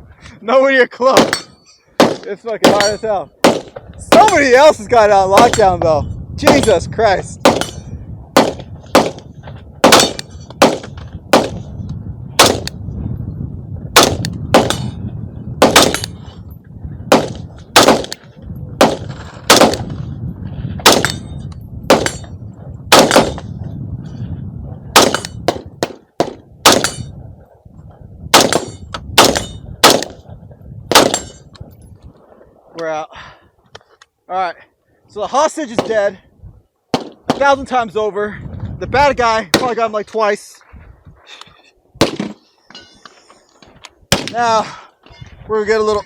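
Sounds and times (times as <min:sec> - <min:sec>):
rifle gunshots: 0:01.2 - 0:04.4, 0:06.4 - 0:06.8, 0:07.4 - 0:07.8, 0:08.4 - 0:11.7, 0:12.4 - 0:12.7, 0:14.0 - 0:15.0, 0:15.6 - 0:16.2, 0:17.1 - 0:18.2, 0:18.8 - 0:19.9, 0:20.8 - 0:21.3, 0:21.9 - 0:22.3, 0:22.9 - 0:23.4, 0:24.9 - 0:27.1, 0:28.3 - 0:30.2, 0:30.9 - 0:31.3, 0:36.9 - 0:37.5, 0:42.0 - 0:42.4.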